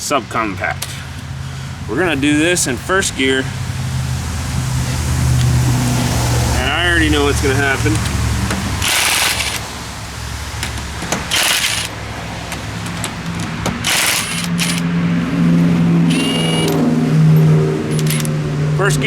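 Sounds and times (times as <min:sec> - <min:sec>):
impact wrench hammering: 0:07.8 - 0:09.7, 0:10.4 - 0:18.4.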